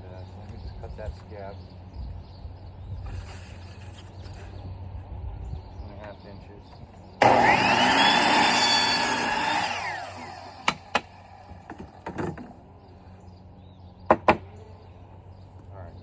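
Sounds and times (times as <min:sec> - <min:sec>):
electric saw cutting plastic pipe: 0:07.2 - 0:11.5.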